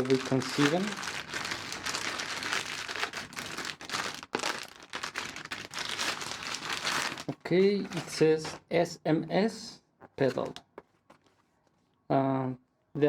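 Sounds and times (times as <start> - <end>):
packaging crumpling and crackling: 0.0 - 8.6.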